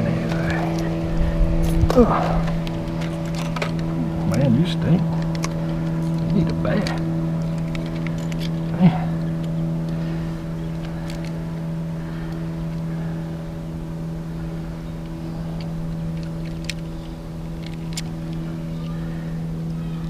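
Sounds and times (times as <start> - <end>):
boat motor humming: 0.0 - 20.0.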